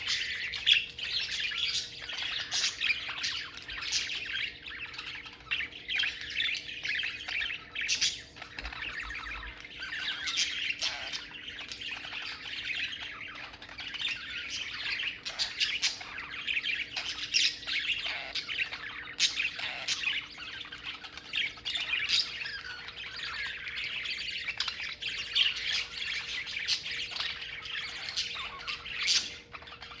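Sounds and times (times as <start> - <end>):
budgerigars chattering: 0.0 - 30.0.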